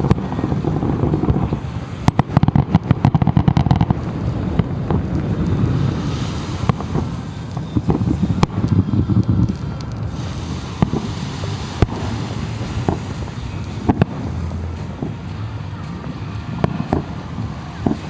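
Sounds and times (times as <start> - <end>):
fireworks booms: 0.0 - 18.0
fireworks crackling bangs: 0.0 - 18.0
low rumble: 0.0 - 18.0.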